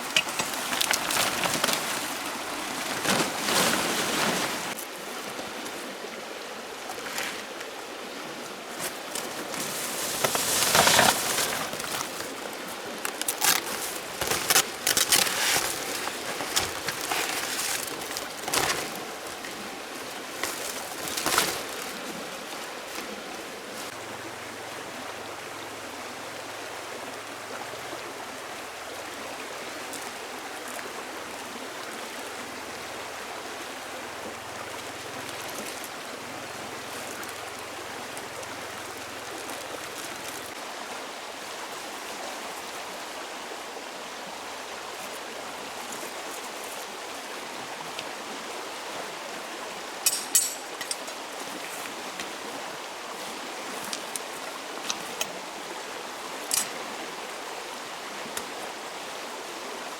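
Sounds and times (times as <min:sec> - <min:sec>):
sharp rustles and knocks: 0:00.0 - 0:04.8, 0:08.8 - 0:23.1, 0:50.0 - 0:52.4
flowing water: 0:00.0 - 0:59.9.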